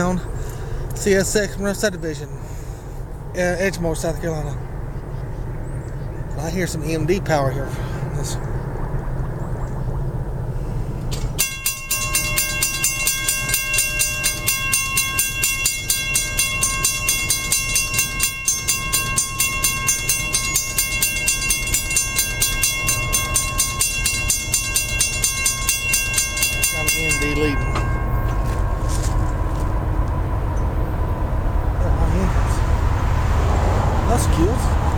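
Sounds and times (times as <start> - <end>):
diesel locomotive rumble: 0.0 - 34.9
railroad crossing bell ringing: 11.4 - 31.8.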